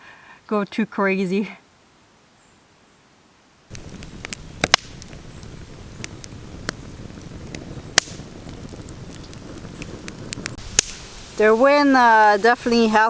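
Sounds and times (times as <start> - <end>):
campfire crackling and popping: 3.7 - 13.0
wind rumble on microphone: 3.7 - 13.0.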